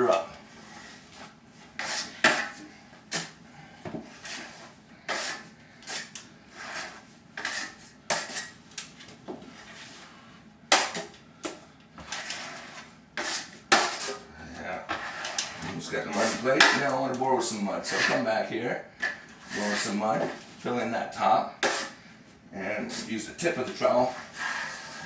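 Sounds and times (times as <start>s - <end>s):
trowel scraping drywall mud: 0.6s - 3.4s, 4.0s - 8.6s, 12.0s - 14.2s, 14.9s - 17.2s, 17.8s - 18.3s, 19.0s - 20.5s, 21.6s - 22.0s, 22.8s - 25.0s.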